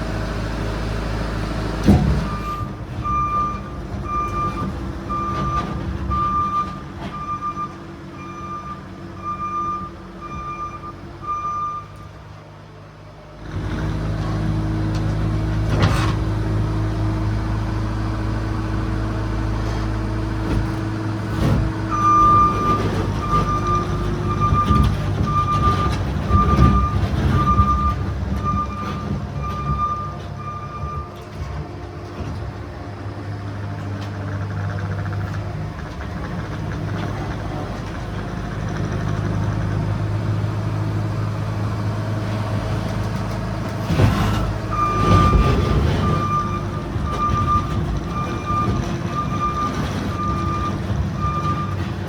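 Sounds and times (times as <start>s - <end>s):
diesel engine running: 0.0s - 52.0s
reverse alarm beeping: 44.8s - 51.8s.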